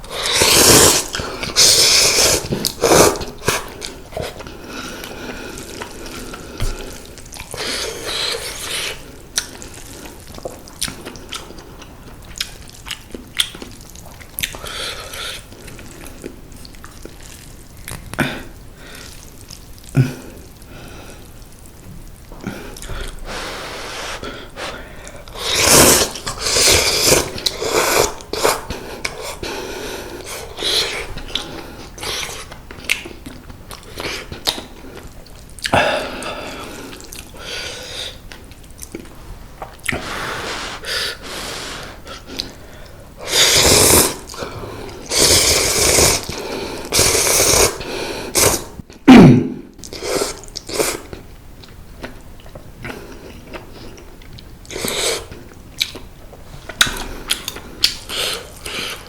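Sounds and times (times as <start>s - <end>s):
person slurping noodles: 0.0s - 4.4s, 22.5s - 29.4s, 39.7s - 42.6s, 43.2s - 51.1s, 54.7s - 55.4s
chewing: 0.2s - 18.2s, 30.2s - 35.8s, 42.2s - 42.6s, 49.8s - 59.0s.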